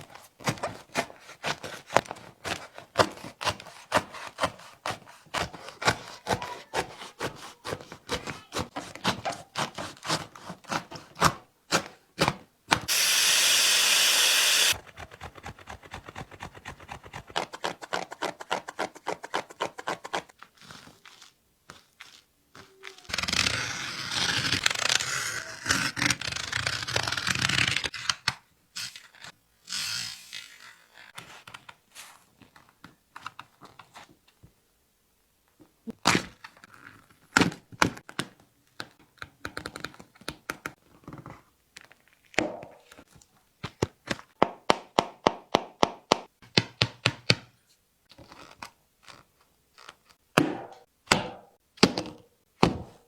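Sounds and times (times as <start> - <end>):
steady tool noise: 12.9 - 14.9
cutting and scraping shoe: 12.9 - 20.3, 48.1 - 50.8
rough tearing: 48.1 - 50.2.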